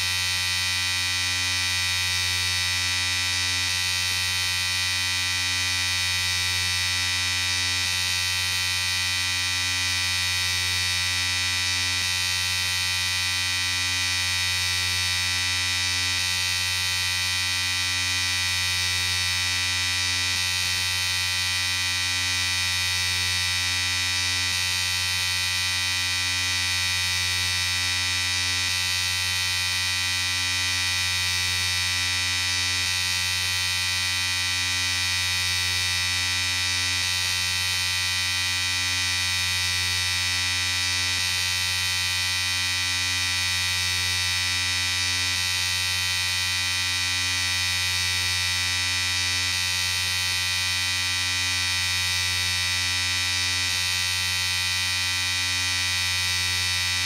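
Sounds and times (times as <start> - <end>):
electric shaver buzzing: 0.0 - 57.0.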